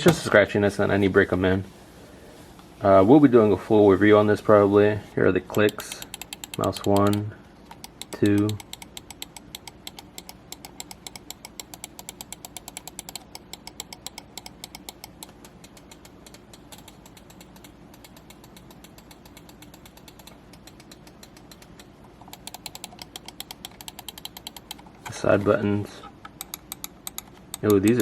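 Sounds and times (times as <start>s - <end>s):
computer mouse clicking: 5.5s - 25.1s, 26.2s - 28.0s.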